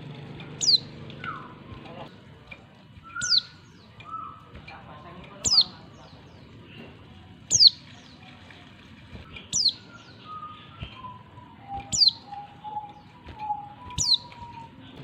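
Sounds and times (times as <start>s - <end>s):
faint low whistled notes: 9.4s - 15.0s.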